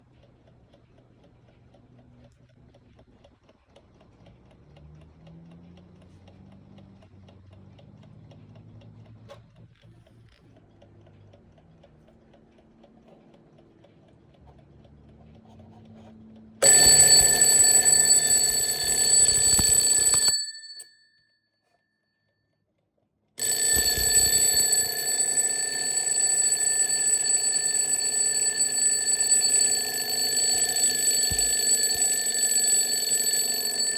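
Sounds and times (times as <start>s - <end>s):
alarm clock bells ringing: 16.6s - 20.9s, 23.4s - 33.9s.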